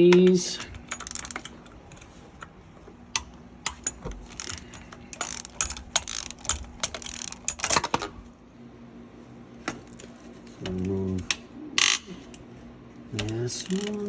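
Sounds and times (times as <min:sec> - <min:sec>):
ratchet clicking: 0:00.6 - 0:01.7, 0:03.2 - 0:08.0, 0:11.8 - 0:12.1, 0:13.2 - 0:14.0.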